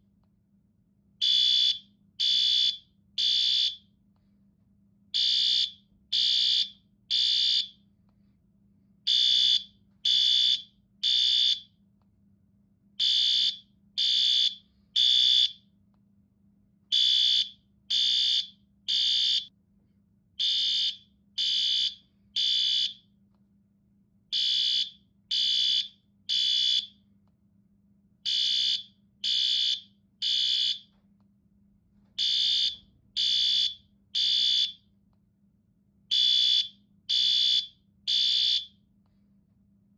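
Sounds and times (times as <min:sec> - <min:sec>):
fire alarm beeps: 0:01.2 - 0:03.9, 0:05.2 - 0:07.8, 0:09.1 - 0:11.7, 0:13.0 - 0:15.6, 0:16.9 - 0:19.5, 0:20.4 - 0:23.1, 0:24.3 - 0:27.0, 0:28.3 - 0:31.0, 0:32.2 - 0:34.8, 0:36.1 - 0:38.8.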